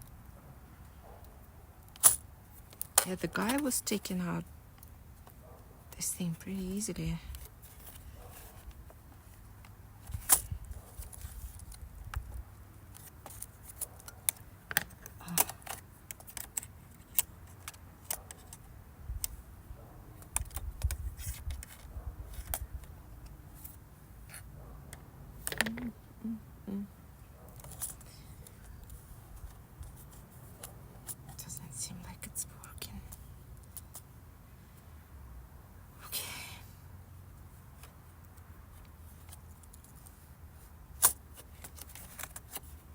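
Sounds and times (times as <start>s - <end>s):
tools clicking on laptop parts: 9.6s - 19.4s.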